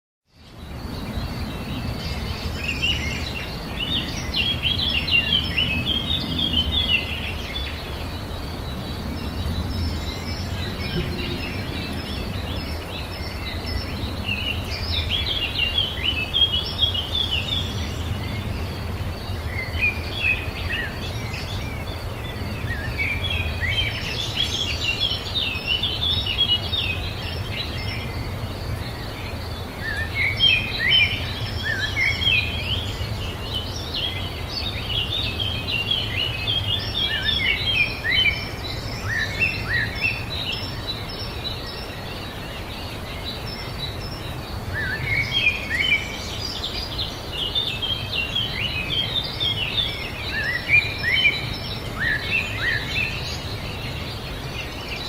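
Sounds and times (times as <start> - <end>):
birds chirping and twittering: 0.2 - 55.0
steady low rumble: 8.1 - 15.0.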